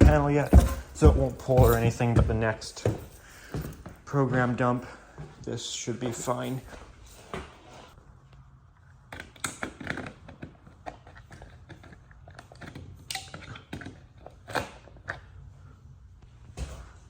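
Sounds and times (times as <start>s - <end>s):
hands handling hardware: 0.0s - 4.0s.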